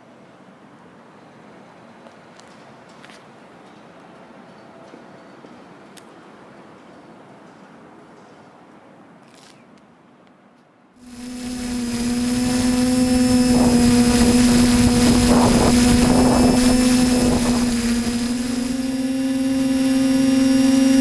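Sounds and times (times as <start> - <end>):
hiss: 11.0 - 21.0
machine motor humming: 11.1 - 21.0.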